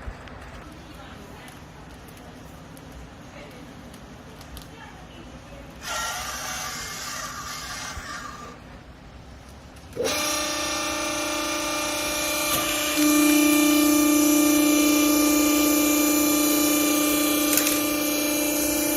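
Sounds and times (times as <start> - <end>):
hydraulic motor and pump whining: 5.8 - 8.7, 9.8 - 18.9.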